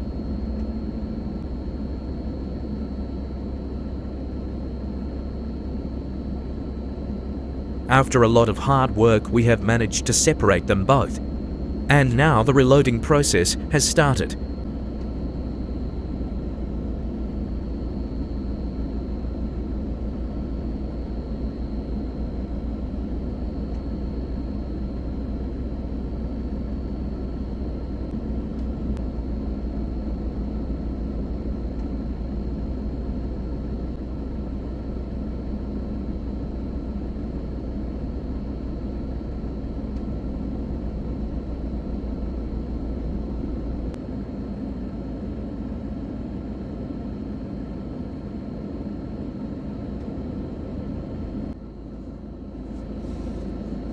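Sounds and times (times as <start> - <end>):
high whine: 0.0 - 53.9
diesel machinery rumbling: 6.9 - 23.8.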